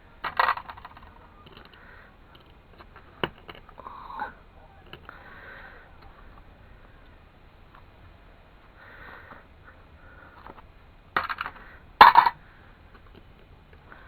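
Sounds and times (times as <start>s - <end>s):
metal clicks and scrapes: 0.2s - 6.5s, 10.4s - 12.4s.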